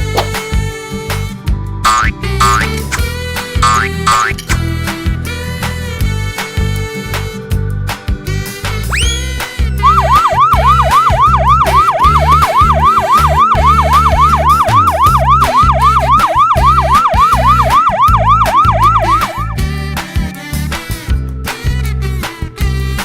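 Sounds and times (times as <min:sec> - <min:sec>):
siren yelping: 0:01.9 - 0:03.0, 0:03.6 - 0:04.4, 0:08.9 - 0:19.6
music with bass beat: 0:01.9 - 0:04.7.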